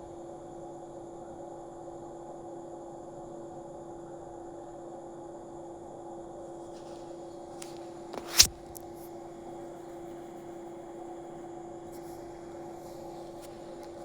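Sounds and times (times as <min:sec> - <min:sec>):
faint hiss: 0:06.7 - 0:14.0.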